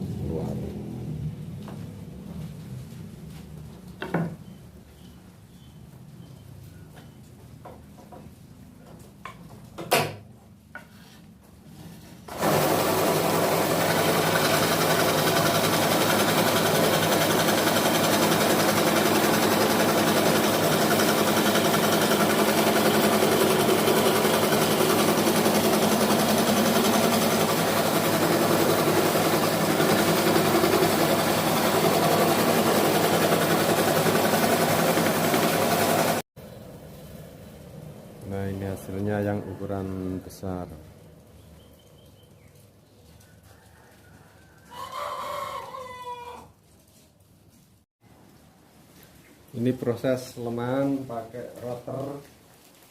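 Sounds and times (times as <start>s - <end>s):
scroll saw cutting wood: 12.3s - 36.2s.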